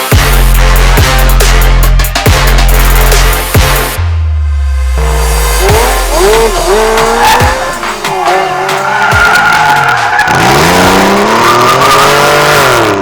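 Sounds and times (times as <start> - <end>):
car engines revving: 4.7 - 13.0
tyres squealing: 6.1 - 12.4.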